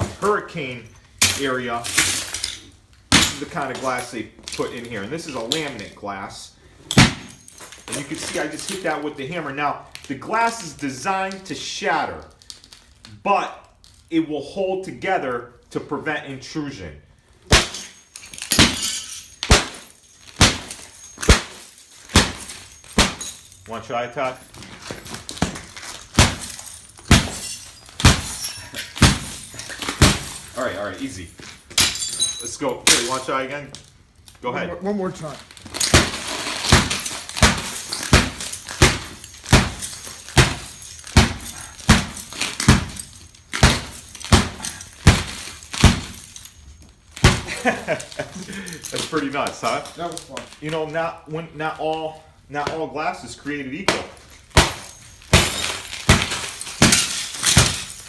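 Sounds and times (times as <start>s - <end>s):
hammer cracking glass: 0.0s - 5.9s, 6.9s - 9.0s, 17.5s - 23.8s, 24.4s - 33.4s, 35.2s - 50.7s, 53.9s - 58.0s.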